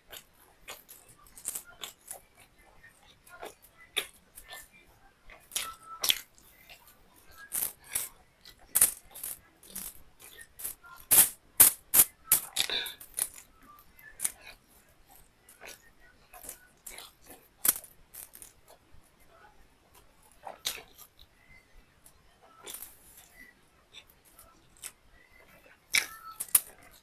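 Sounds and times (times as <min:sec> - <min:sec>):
person chewing food: 0:00.0 - 0:04.7, 0:05.3 - 0:18.8, 0:19.9 - 0:21.3.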